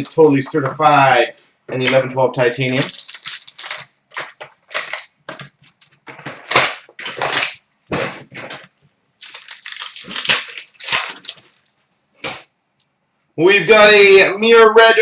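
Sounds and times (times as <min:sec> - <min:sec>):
plastic wrapping torn and crinkled: 0:01.8 - 0:12.4.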